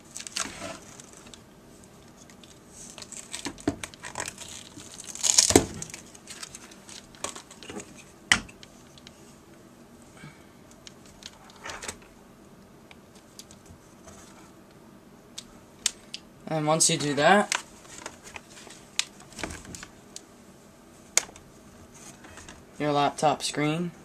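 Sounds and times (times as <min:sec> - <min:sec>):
scraping rustle: 0:00.1 - 0:01.4.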